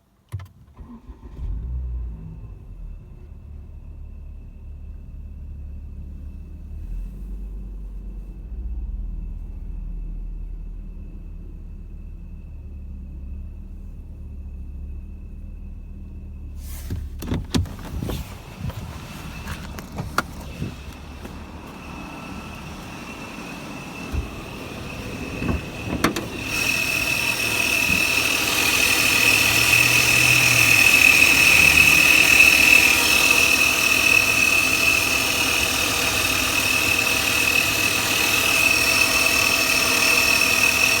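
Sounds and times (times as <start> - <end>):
car engine idling: 0.8 - 41.0
high-pitched throttle whistle: 21.5 - 39.4.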